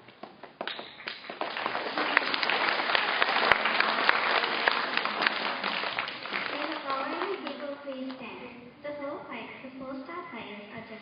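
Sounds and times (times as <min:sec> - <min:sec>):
children applauding: 0:00.6 - 0:08.1.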